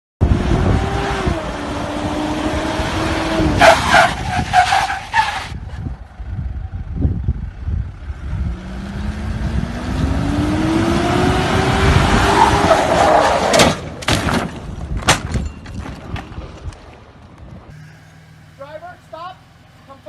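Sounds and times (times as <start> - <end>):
off-road engine revving: 0.2 - 4.4, 7.3 - 13.4.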